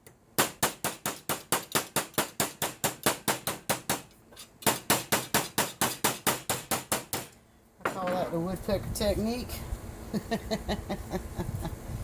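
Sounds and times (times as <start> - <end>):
hammer tapping aluminum: 0.0 - 8.4.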